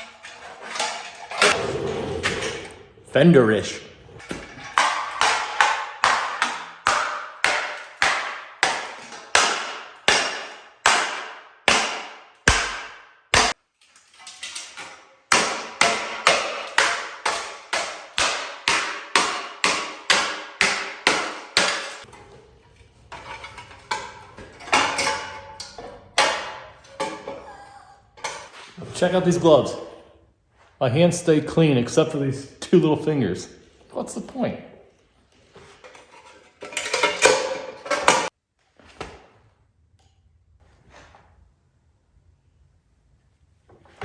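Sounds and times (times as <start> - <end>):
hammer striking metal fender: 4.7 - 13.6, 15.3 - 22.2, 23.2 - 27.4.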